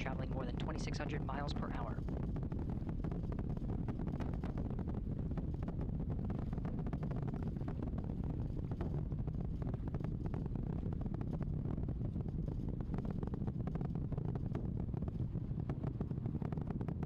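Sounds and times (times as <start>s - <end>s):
rocket roar with crackling: 0.0s - 17.0s.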